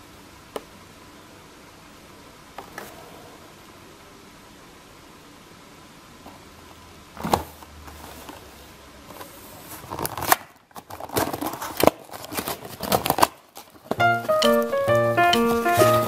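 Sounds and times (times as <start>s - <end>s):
packaging crackling and rustling: 9.1s - 14.8s
packaging click: 10.0s - 16.0s.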